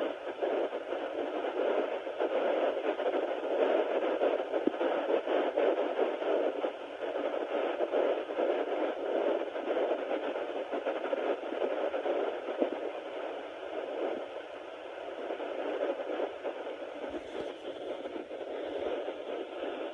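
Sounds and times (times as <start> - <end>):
scratchy crackles from probe: 15.4 - 19.9.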